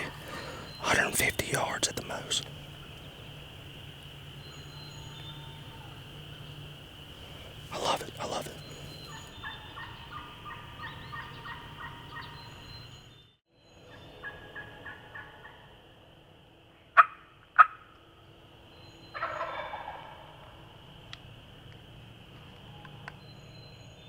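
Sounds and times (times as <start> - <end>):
turkey rattling gobble: 19.2 - 20.2
turkeys yelping: 19.2 - 20.2.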